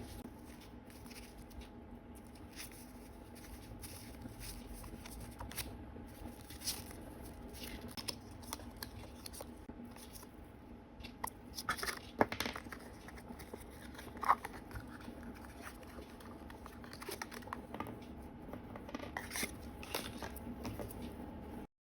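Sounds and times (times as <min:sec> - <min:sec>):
faint steady hum: 0:00.0 - 0:21.7
packaging crinkling and tearing: 0:03.7 - 0:10.3.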